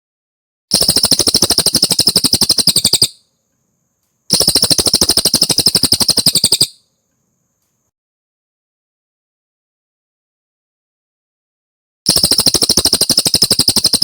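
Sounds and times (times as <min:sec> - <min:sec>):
bird singing high trills: 0:00.8 - 0:03.3, 0:04.3 - 0:06.9.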